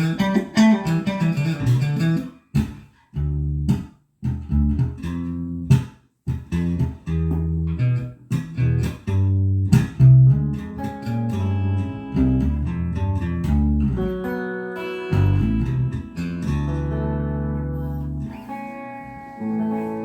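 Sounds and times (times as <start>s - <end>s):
electric bass plucked notes: 0.0s - 20.0s.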